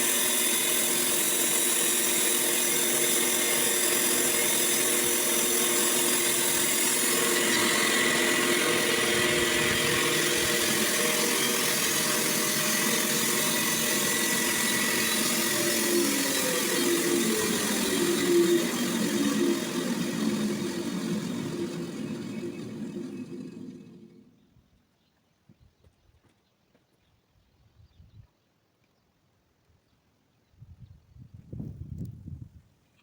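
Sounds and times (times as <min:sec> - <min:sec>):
sawmill machine humming: 0:00.0 - 0:24.4.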